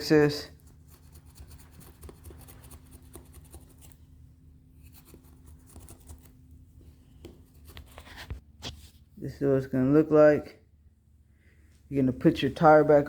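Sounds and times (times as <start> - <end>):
low steady hum: 0.0 - 13.0
knife scraping rubber: 0.6 - 4.0, 4.8 - 8.9.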